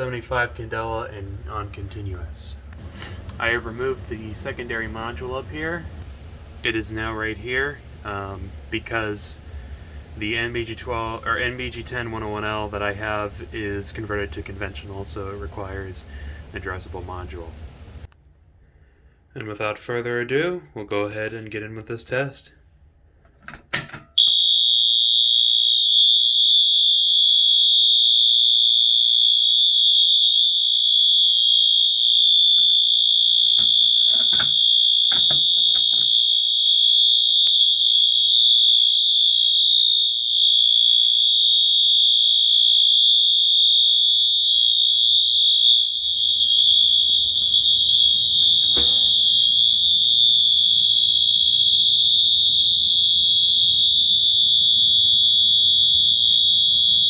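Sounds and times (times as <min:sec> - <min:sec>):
steady high-pitched alarm horn tone: 0:24.2 - 0:57.0.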